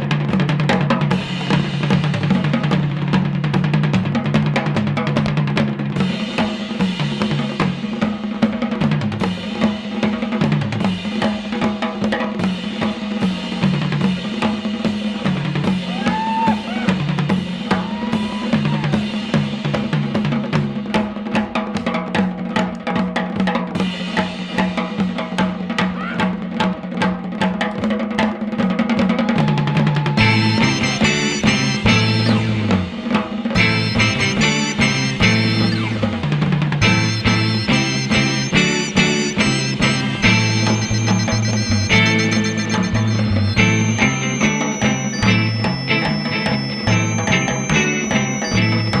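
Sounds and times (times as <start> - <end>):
instrumental rock band music: 0.0 - 21.6, 29.9 - 49.0
drum kit: 0.0 - 49.0
bass line: 30.2 - 33.0, 33.6 - 49.0
bending lead guitar notes: 30.2 - 33.0, 33.6 - 49.0.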